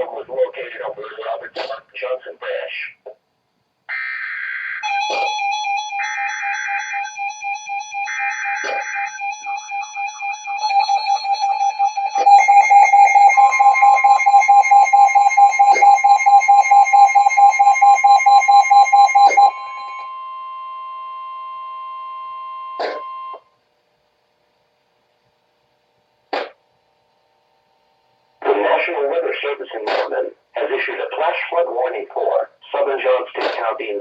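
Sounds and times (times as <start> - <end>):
electronic beeping alarm: 3.9 - 23.5
steady warning tone: 4.8 - 23.5.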